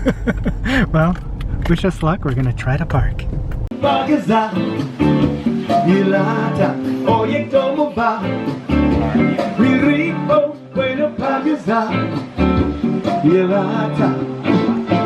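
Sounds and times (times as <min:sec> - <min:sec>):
guitar: 0:03.4 - 0:15.0
person singing: 0:03.7 - 0:15.0.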